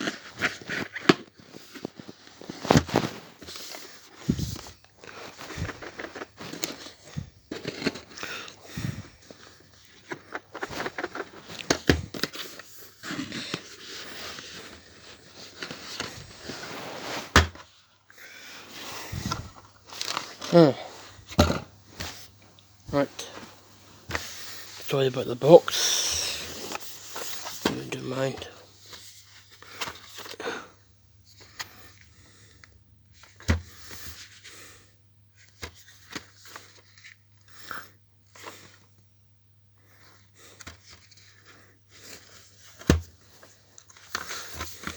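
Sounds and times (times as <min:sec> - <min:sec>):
packaging scrapes and rustles: 0:00.0 - 0:22.4, 0:23.0 - 0:30.4
plastic wrap crinkling and tearing: 0:18.6 - 0:21.2.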